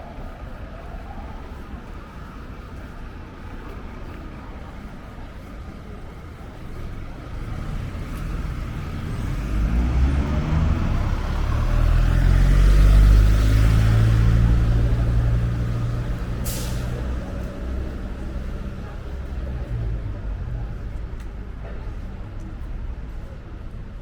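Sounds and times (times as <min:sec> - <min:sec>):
vehicle passing by: 0:07.3 - 0:20.8
short hiss: 0:16.4 - 0:17.0.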